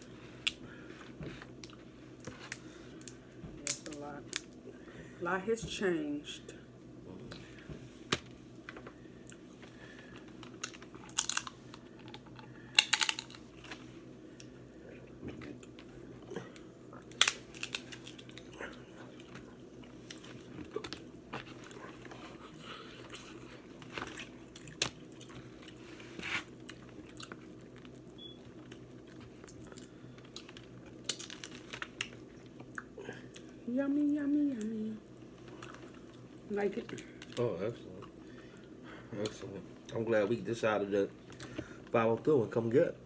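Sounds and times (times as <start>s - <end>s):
shell cracks and crunches: 1.6s - 4.6s, 10.4s - 13.8s, 17.0s - 18.5s, 29.5s - 32.2s
chewing and mouth noises: 14.4s - 25.8s, 26.6s - 33.6s, 35.1s - 38.4s.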